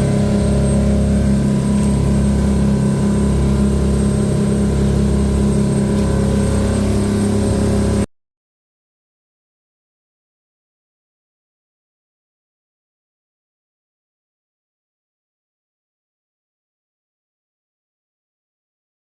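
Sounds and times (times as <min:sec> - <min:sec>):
boat engine running steadily: 0:00.0 - 0:08.1.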